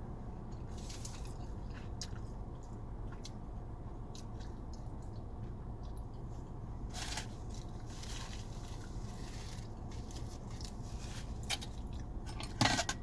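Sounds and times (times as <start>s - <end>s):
steady low hum: 0.0s - 13.0s
chewing with wet smacks: 0.3s - 6.6s.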